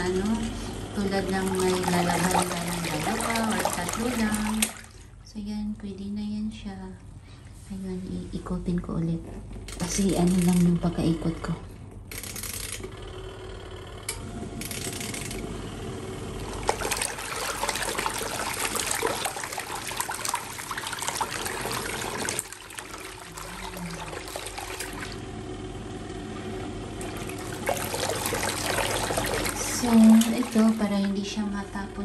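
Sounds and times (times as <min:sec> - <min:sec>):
water churning in washing machine: 0:00.0 - 0:05.2, 0:14.2 - 0:32.0
low motor hum: 0:00.0 - 0:07.1, 0:12.8 - 0:32.0.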